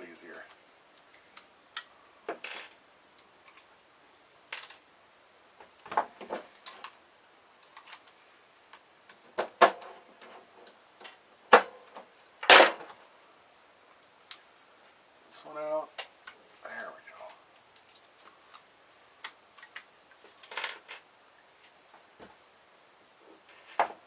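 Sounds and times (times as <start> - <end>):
sharp clicks and snaps: 14.0 - 14.6, 17.2 - 20.2.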